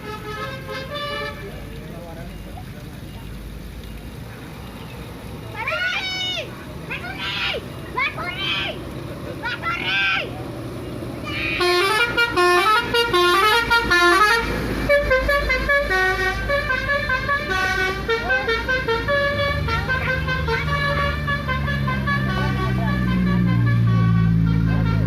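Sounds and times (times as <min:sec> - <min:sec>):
bus air horn melody: 0:00.0 - 0:01.6, 0:11.2 - 0:25.0.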